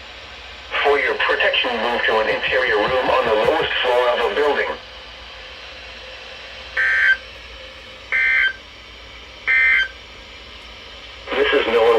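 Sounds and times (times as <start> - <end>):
faint radio hiss: 11.3 - 11.9.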